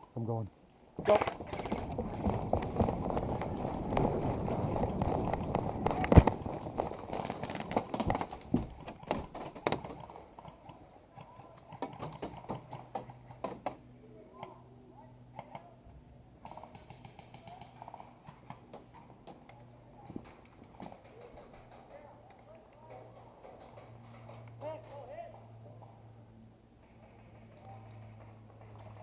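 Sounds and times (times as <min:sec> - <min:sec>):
distant voices: 0:00.2 - 0:29.0
running footsteps: 0:01.1 - 0:10.7.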